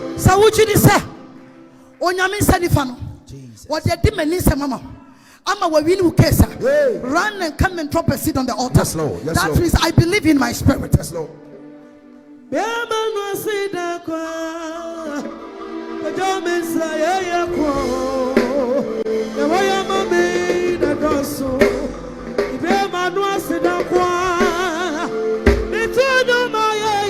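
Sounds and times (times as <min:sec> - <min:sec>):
person singing with vibrato: 0:12.4 - 0:27.0
sustained keyboard chords: 0:14.8 - 0:27.0.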